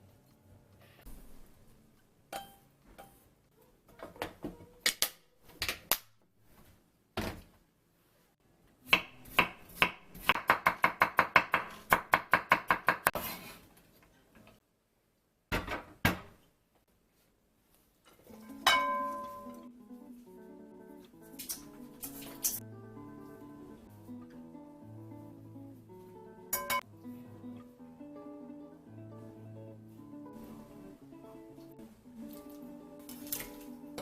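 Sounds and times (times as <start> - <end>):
kitchenware knocks and clinks: 26.6 - 26.8.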